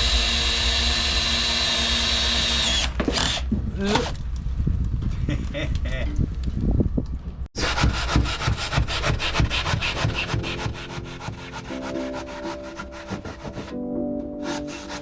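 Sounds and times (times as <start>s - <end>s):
tool rasping fibreglass: 7.6s - 13.8s, 14.4s - 15.0s
background music with held notes: 9.3s - 15.0s.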